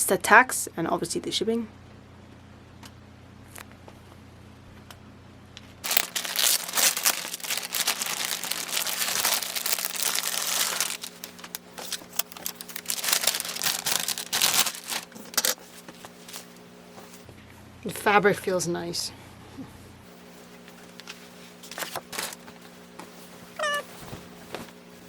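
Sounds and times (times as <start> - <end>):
plastic packaging crinkling: 5.8 - 16.6, 21.7 - 22.4.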